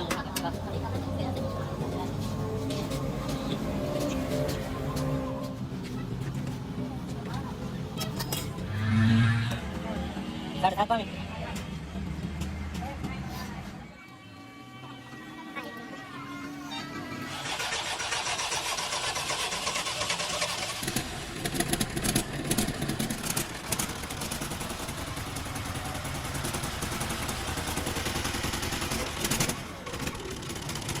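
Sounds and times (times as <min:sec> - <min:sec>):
tractor diesel engine running: 0:00.0 - 0:08.0, 0:17.0 - 0:31.0.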